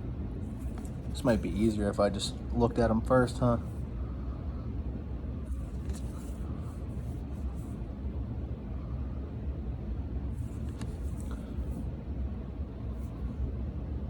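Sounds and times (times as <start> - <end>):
low background rumble: 0.0 - 14.0
trading cards rustling: 0.5 - 1.8, 5.5 - 7.8.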